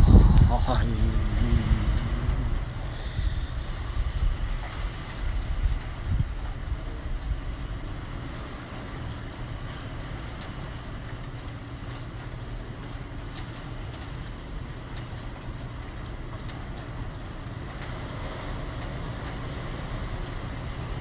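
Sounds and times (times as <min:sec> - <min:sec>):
strong wind rumbling: 0:00.0 - 0:07.8.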